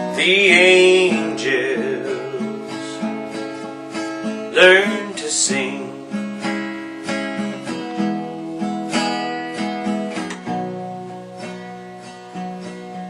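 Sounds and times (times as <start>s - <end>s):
person singing: 0.0s - 6.5s
acoustic guitar strumming chords: 0.0s - 13.0s.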